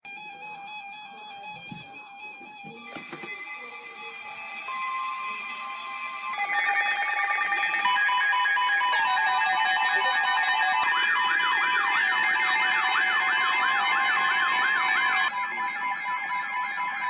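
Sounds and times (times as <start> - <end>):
electronic alert tones and beeps: 2.7 - 17.0
siren-like warble: 2.7 - 17.0.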